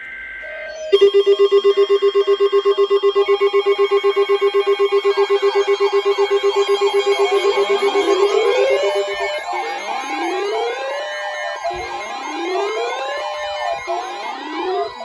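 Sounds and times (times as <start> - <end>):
electronic alarm trilling: 0.1 - 15.0
sweeping alarm whoops: 0.4 - 15.0
short steady beeps: 0.9 - 9.3.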